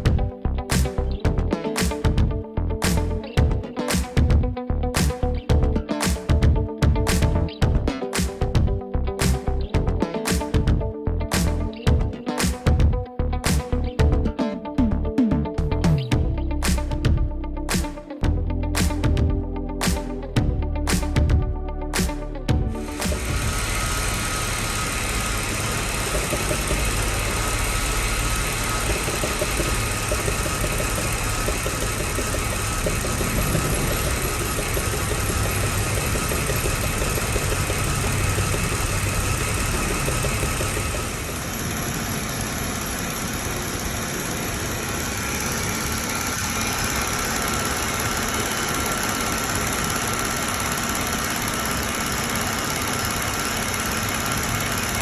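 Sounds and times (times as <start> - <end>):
car engine idling: 22.7 - 55.0.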